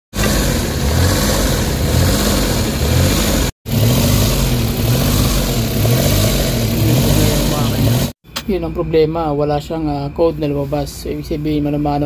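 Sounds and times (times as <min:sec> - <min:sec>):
engine idling roughly: 0:00.1 - 0:08.2.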